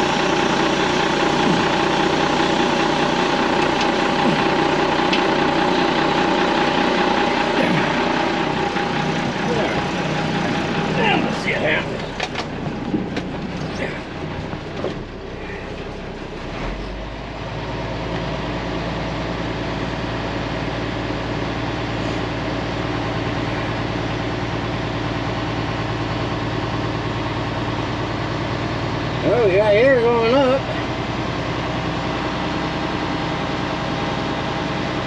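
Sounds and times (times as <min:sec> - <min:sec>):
air compressor building pressure: 0:00.0 - 0:14.1
diesel engine idling: 0:00.0 - 0:35.0.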